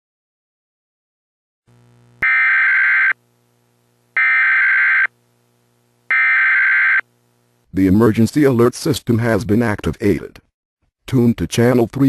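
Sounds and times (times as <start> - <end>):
buzzing digital data bursts: 2.2 - 3.2, 4.2 - 5.2, 6.1 - 7.1.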